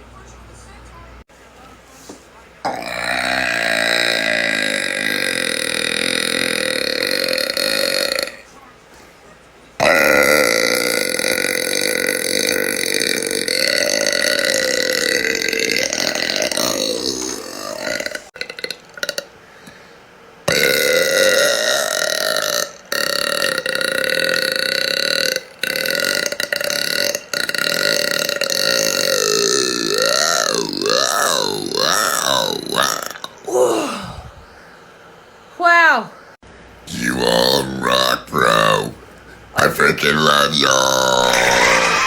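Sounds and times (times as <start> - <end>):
woman belching: 2.7 - 8.4, 9.8 - 19.3, 20.5 - 34.3, 40.2 - 42.0.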